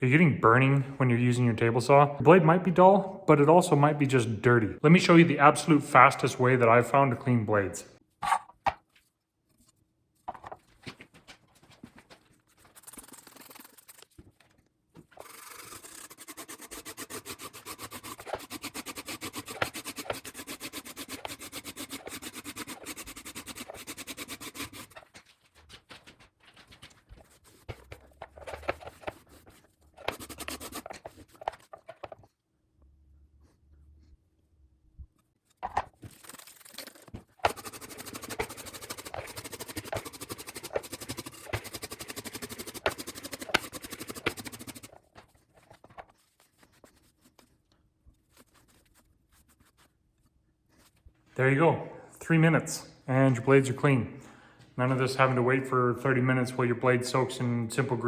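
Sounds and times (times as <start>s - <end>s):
brush scrubbing saw blade: 12.6s - 14.2s, 15.2s - 25.0s, 27.2s - 31.9s, 36.1s - 45.0s
handling noises: 24.8s - 32.4s.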